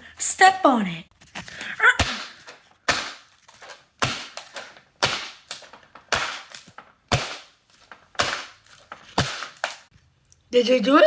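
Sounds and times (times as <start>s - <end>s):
laptop cracking under stomps: 2.0s - 9.9s.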